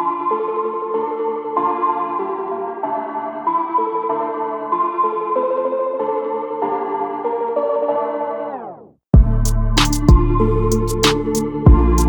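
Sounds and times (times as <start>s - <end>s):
soft synthesizer chords: 9.2s - 12.0s.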